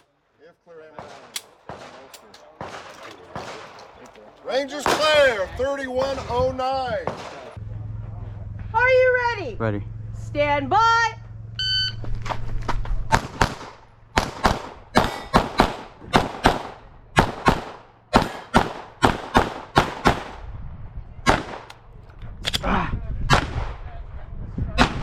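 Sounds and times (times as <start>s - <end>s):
pistol shots: 1.0s - 7.6s, 13.1s - 20.4s, 21.3s - 21.8s.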